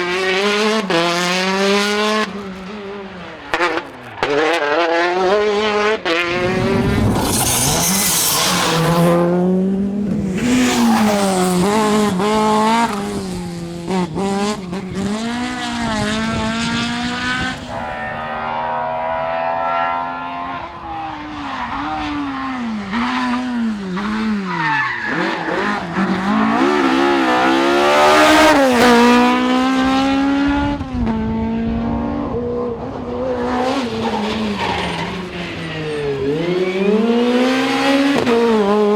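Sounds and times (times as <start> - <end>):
rally car engines revving: 0.0 - 38.9
tyre squeal: 6.3 - 9.2, 33.7 - 38.0.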